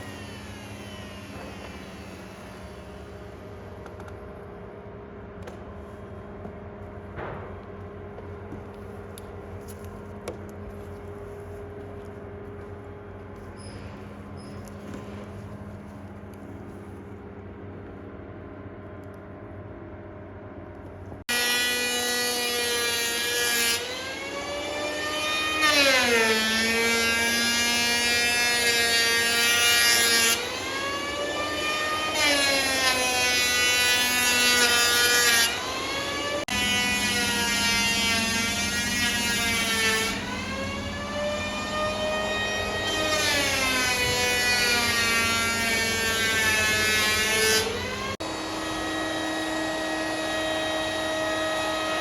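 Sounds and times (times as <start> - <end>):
power tool whining through timber: 0.0 - 4.2, 21.3 - 52.0.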